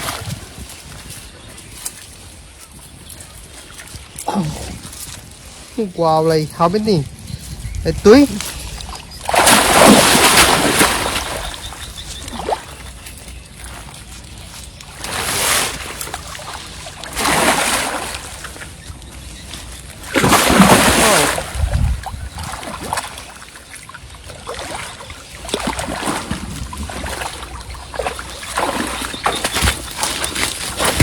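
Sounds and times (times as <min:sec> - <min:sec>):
fish thrashing and splashing water: 0:08.1 - 0:31.0.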